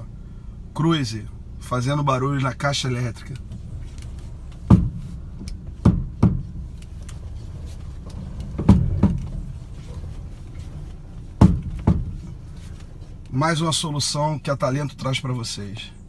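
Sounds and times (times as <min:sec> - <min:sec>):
steady low hum: 0:00.0 - 0:16.0
steering rack clunking: 0:03.2 - 0:13.8.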